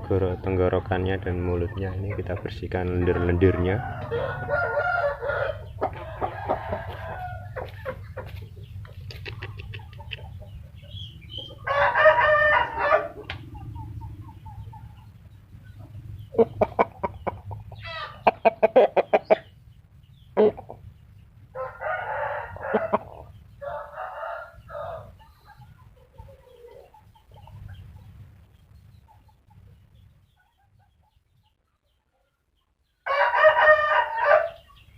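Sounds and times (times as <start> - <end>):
steady low hum: 0.0 - 26.2
chickens clucking: 0.0 - 34.9
rooster crowing: 3.0 - 7.7, 11.6 - 13.3, 21.5 - 25.2, 33.0 - 34.7.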